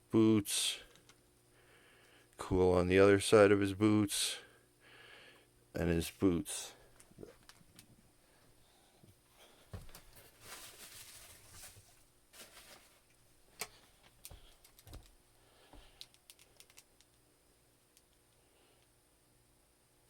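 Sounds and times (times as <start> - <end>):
plastic toys clicking and tapping: 16.0 - 17.1.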